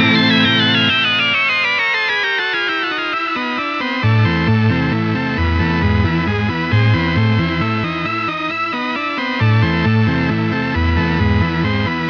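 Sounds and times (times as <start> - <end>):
bass line: 0.0 - 2.1
plucked guitar notes: 0.0 - 2.2.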